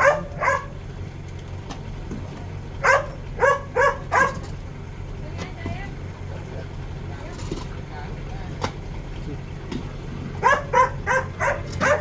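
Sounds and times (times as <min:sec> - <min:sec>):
dog barking: 0:00.0 - 0:00.8, 0:02.8 - 0:04.4, 0:10.4 - 0:12.0
vehicle engine humming: 0:00.0 - 0:12.0.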